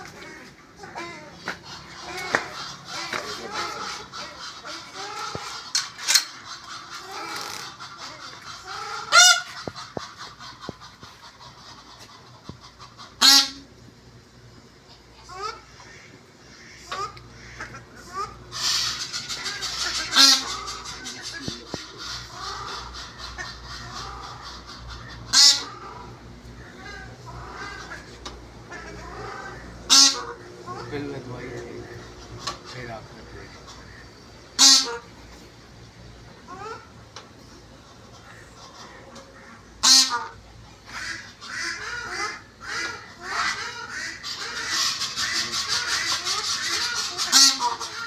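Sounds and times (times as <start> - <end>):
farm birds honking: 0.0 - 48.0
loud harsh bird squawk: 15.4 - 28.1, 33.2 - 35.2, 39.4 - 48.0.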